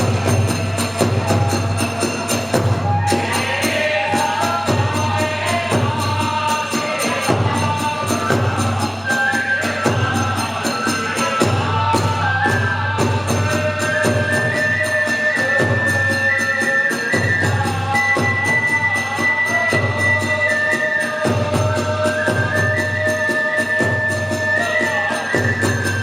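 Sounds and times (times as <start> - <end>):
hand cymbals clashing: 0.0 - 12.2
drums: 0.0 - 26.0
high flute melody: 8.9 - 21.2, 22.0 - 26.0.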